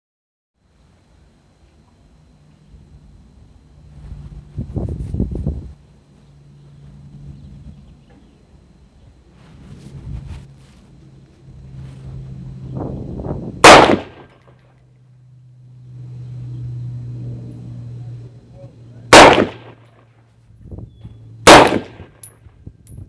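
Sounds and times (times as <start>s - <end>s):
steady low hum: 0.6s - 23.0s
rifle shots: 13.6s - 14.3s, 19.1s - 19.9s, 21.4s - 22.2s.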